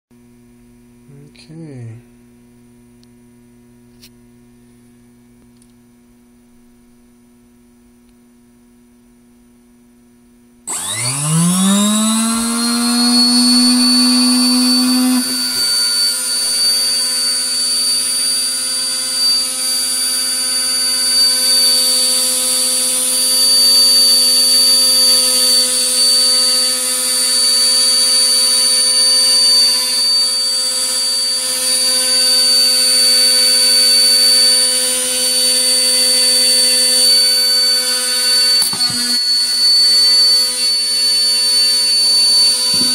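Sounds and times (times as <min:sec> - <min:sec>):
low electrical hum: 0:00.2 - 0:20.4
electric spindle motor whine: 0:10.7 - 0:42.9.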